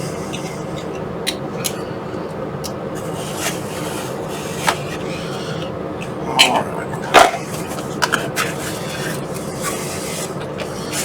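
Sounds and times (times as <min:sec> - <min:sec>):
steady background hum: 0:00.0 - 0:11.0
items rubbing and scraping: 0:02.9 - 0:11.0.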